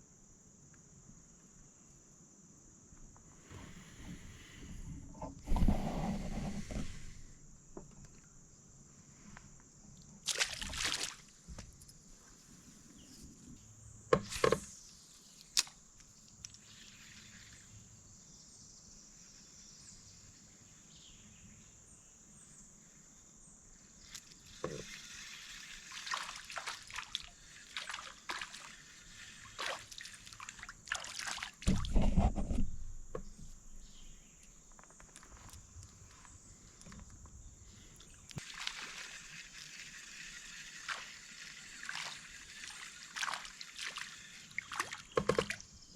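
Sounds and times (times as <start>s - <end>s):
water splashing and trickling: 10.2s - 11.6s, 24.0s - 32.0s, 37.8s - 45.9s.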